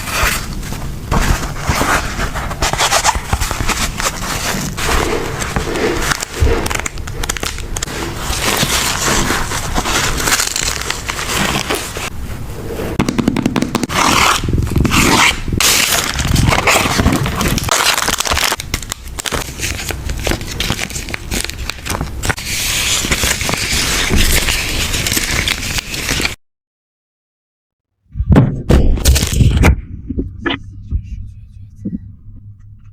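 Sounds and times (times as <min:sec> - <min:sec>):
paper and plastic crinkling: 0:00.0 - 0:12.1, 0:13.1 - 0:26.4.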